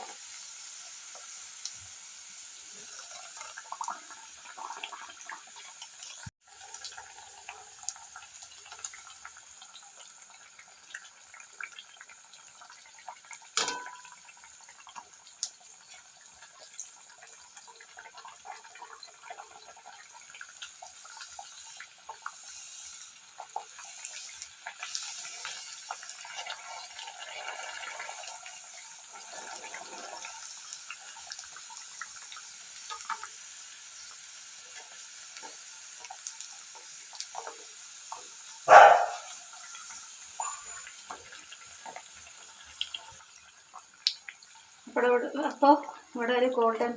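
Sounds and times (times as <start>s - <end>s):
dough sizzling in hot oil: 0.0s - 46.9s.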